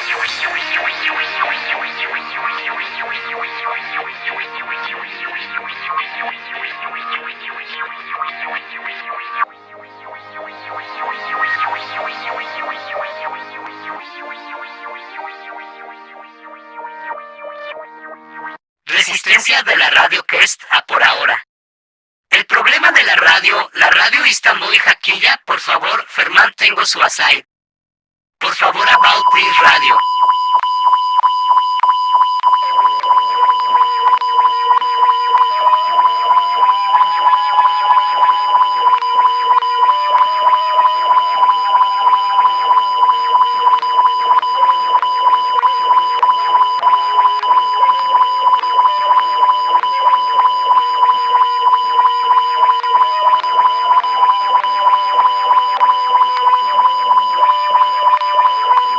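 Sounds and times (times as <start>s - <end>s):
pulsing beep test tone: 28.7s - 58.9s.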